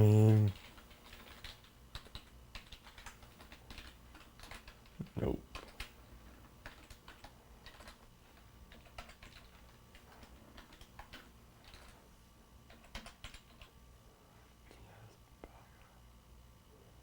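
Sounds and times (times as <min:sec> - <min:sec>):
faint keyboard typing: 0:00.0 - 0:13.8.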